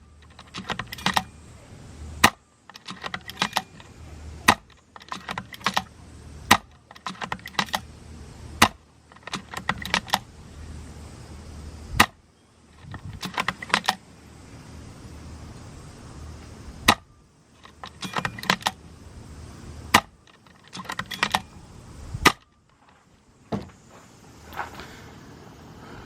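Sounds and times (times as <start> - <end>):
rifle bolt rattling: 0.2 - 1.3, 2.7 - 3.9, 4.5 - 5.9, 6.5 - 7.9, 8.6 - 10.3, 12.8 - 14.0, 17.6 - 18.8, 20.0 - 21.5
wind rumbling on microphone: 12.8 - 13.3, 21.6 - 22.3.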